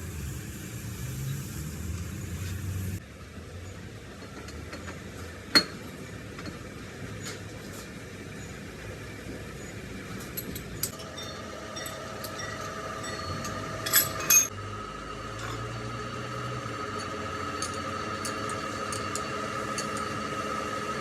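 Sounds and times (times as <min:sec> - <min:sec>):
metal clinks and clicks: 0:10.2 - 0:14.5, 0:17.0 - 0:20.4
machine whining: 0:10.8 - 0:21.0.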